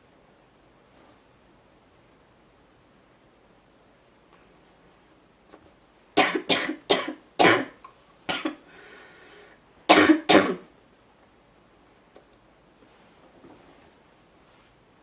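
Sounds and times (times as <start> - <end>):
woman coughing: 6.2 - 8.6, 9.9 - 10.7
breath in: 8.6 - 9.6.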